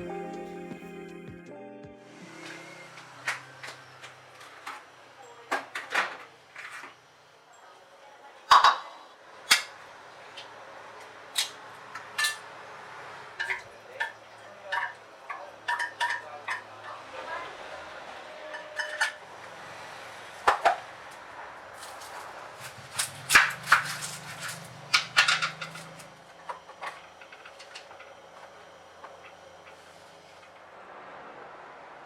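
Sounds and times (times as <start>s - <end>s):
dishes and utensils clinking: 13.4s - 17.0s, 18.4s - 19.2s, 23.0s - 26.1s.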